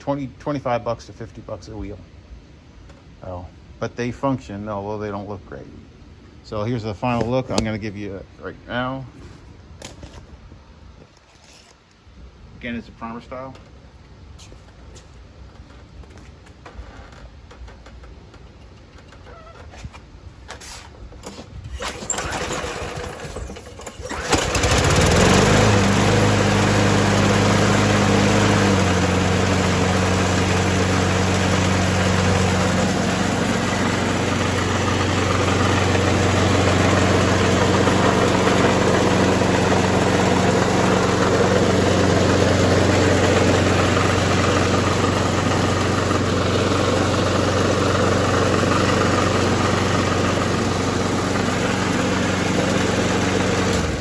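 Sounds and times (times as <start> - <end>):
lawn mower engine pull-started: 7.0 - 7.8, 16.6 - 54.0.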